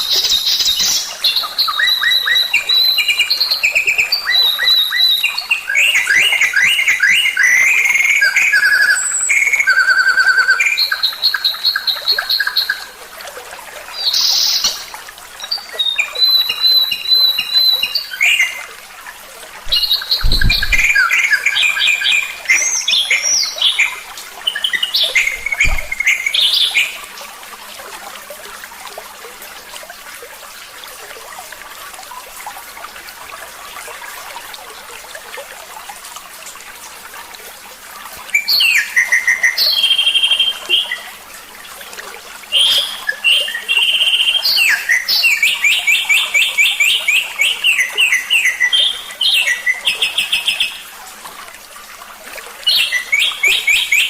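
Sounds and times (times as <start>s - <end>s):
low thumps: 19.7s - 21.0s, 25.2s - 26.1s
songbird singing trills: 19.7s - 27.0s.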